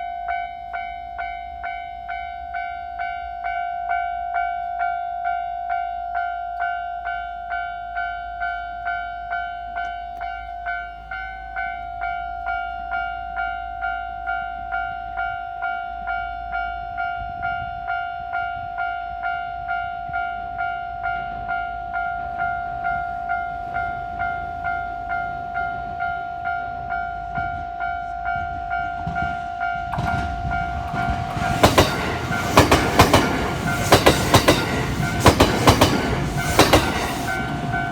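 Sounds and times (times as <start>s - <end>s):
level-crossing warning bell: 0.0s - 37.9s
train wheels clattering over joints: 29.0s - 37.9s.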